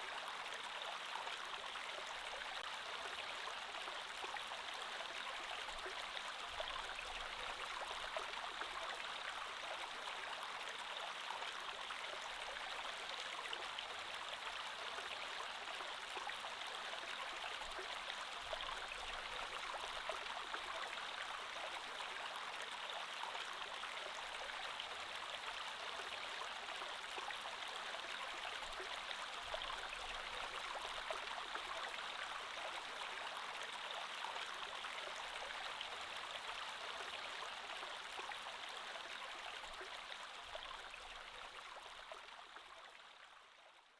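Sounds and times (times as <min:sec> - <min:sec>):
creek water flowing over stones: 0:00.0 - 0:43.6.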